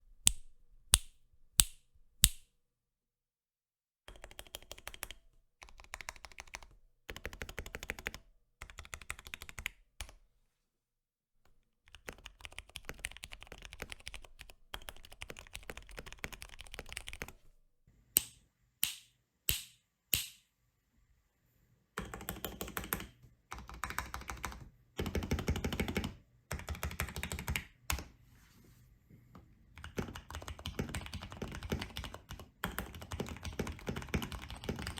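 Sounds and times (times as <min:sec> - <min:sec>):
mechanical keyboard typing: 0:04.1 - 0:10.2, 0:11.9 - 0:17.4, 0:22.0 - 0:28.1, 0:29.8 - 0:34.9.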